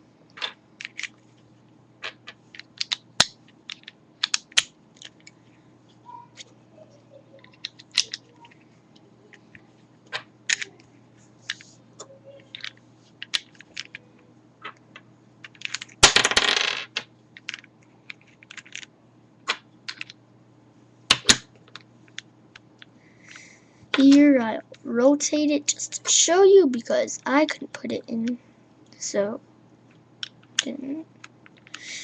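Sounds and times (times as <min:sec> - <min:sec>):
plastic puzzle pieces clicking: 0:00.4 - 0:01.1, 0:02.0 - 0:05.3, 0:07.4 - 0:08.6, 0:10.1 - 0:10.7, 0:12.5 - 0:14.0, 0:15.4 - 0:16.0, 0:16.9 - 0:17.7, 0:18.4 - 0:18.9, 0:19.5 - 0:20.2
plastic pieces clattering: 0:15.4 - 0:17.7.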